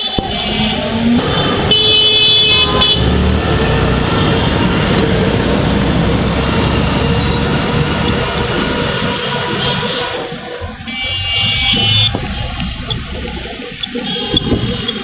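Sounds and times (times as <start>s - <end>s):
vehicle horn: 0.0s - 5.5s, 8.6s - 13.0s
city road traffic: 0.0s - 15.0s
wind on microphone: 7.7s - 15.0s.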